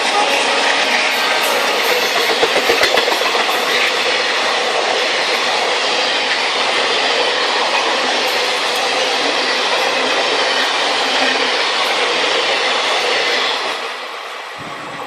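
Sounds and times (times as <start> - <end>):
train carriage rumbling: 0.0 - 15.0
wheels clicking over rail joints: 1.2 - 5.5.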